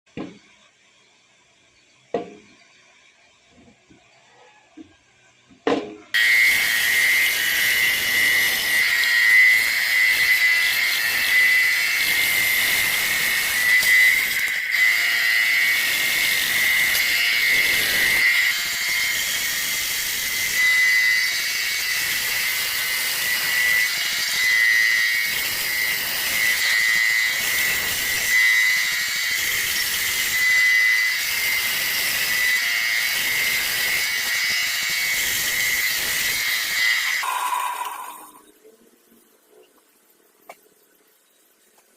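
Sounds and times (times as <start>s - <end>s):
power tool cutting wood: 6.1s - 38.5s.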